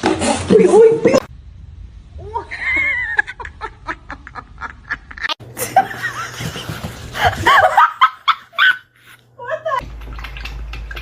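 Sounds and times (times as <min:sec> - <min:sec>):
people laughing: 0:02.5 - 0:09.1.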